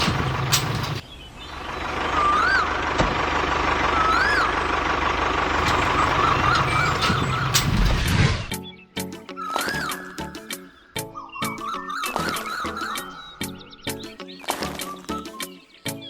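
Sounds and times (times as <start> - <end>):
vehicle engine running: 0.0 - 8.5
steady whistling tone: 5.6 - 7.7, 8.5 - 14.0.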